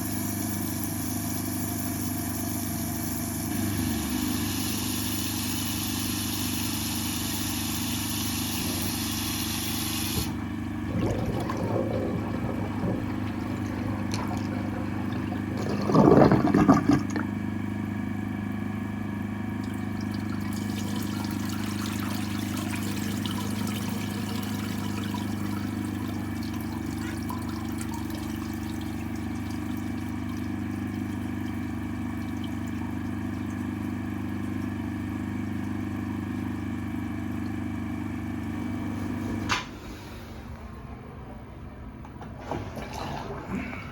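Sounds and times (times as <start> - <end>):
drain jetter engine running: 0.0 - 40.4
water sounds: 8.5 - 39.5.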